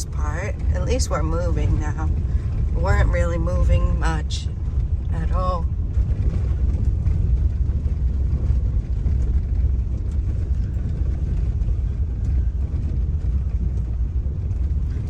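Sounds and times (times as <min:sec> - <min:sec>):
car engine and road noise: 0:00.0 - 0:15.0.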